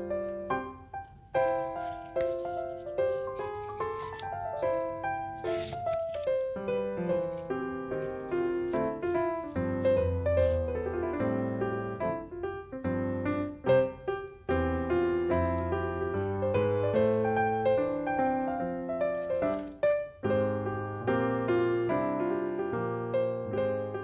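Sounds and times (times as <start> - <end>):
gentle piano melody: 0.0 - 24.0.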